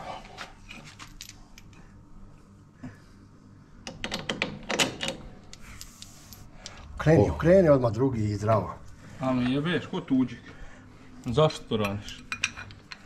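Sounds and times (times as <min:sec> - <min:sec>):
metal tools clinking and rattling: 0:11.7 - 0:13.0.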